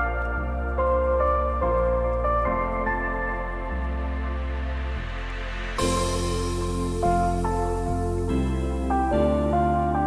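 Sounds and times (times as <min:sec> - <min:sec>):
calm new-age instrumental music: 0:00.0 - 0:10.0.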